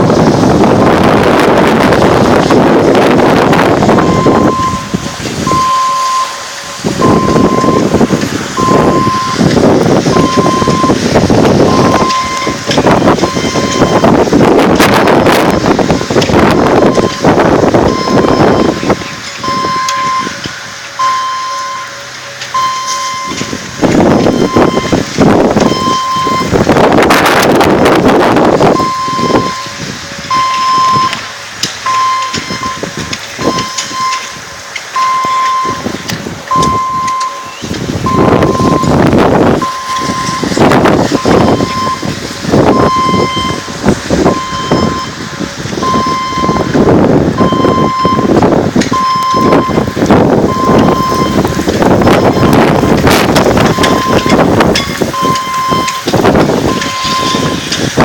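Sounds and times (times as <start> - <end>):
rushing noise: 0.0 - 58.0
electronic beeps: 5.5 - 6.4, 8.6 - 9.4, 17.9 - 20.4, 21.0 - 21.9, 36.5 - 39.0, 48.9 - 49.8, 53.6 - 56.1, 56.7 - 57.6.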